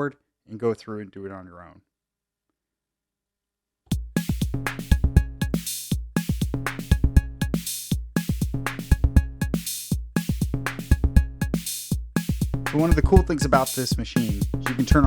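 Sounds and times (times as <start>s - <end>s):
deep kick drum hits: 3.9s - 5.6s
drum machine beat: 3.9s - 15.0s
hissy hi-hat and cymbal hits: 3.9s - 15.0s.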